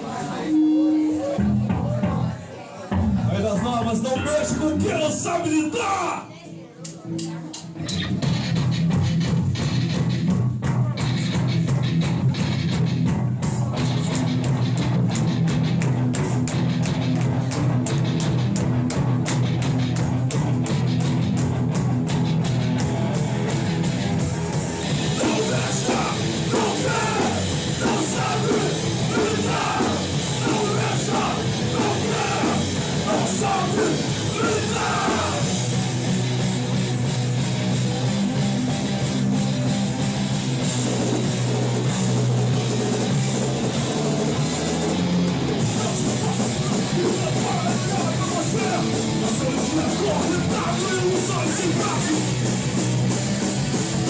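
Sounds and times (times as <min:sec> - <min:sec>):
punk band playing live: 0:00.0 - 0:06.0, 0:07.0 - 0:54.0
shouted vocals: 0:04.2 - 0:06.4, 0:25.0 - 0:35.6, 0:45.6 - 0:52.3.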